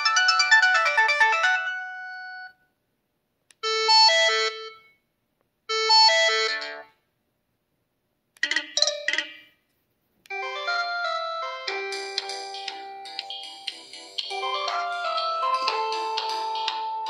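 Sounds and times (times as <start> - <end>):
synthesized phone ringtone: 8.4 - 9.6, 10.3 - 17.0.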